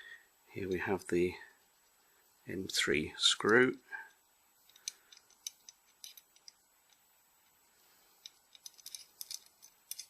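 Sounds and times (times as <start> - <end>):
small metal parts clicking: 4.6 - 7.6, 8.2 - 10.0.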